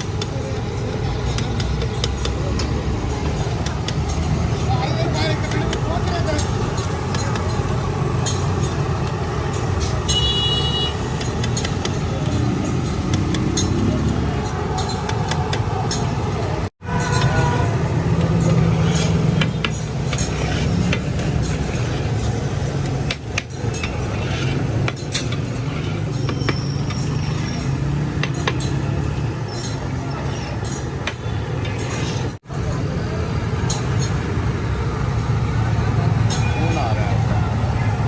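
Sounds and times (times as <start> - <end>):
metal utensils clinking: 0.0 - 10.3, 11.0 - 17.6
traffic rumble: 0.0 - 38.0.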